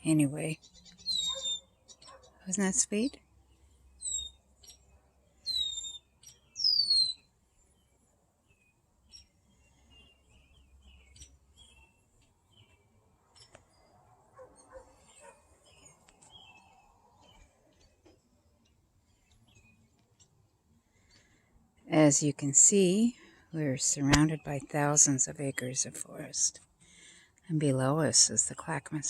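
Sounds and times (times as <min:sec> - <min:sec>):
faint bird chirps: 0:00.4 - 0:21.6
birds whistling sharply falling calls: 0:00.9 - 0:01.8, 0:05.4 - 0:07.3.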